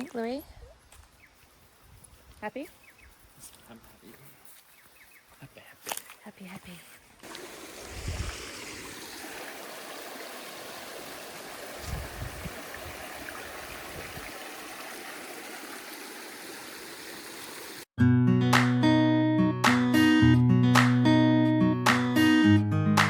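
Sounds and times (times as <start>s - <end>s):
creek water rushing: 7.2s - 17.9s
acoustic guitar music: 18.0s - 23.0s.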